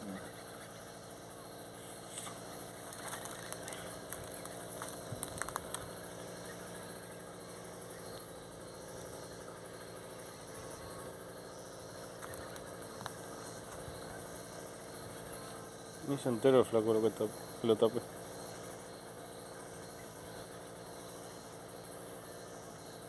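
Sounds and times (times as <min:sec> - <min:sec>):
motor idling: 0:00.0 - 0:23.0.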